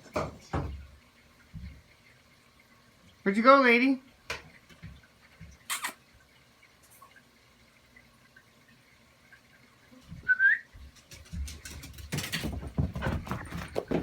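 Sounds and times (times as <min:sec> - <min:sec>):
cat and dog play-fighting: 0:10.9 - 0:14.0.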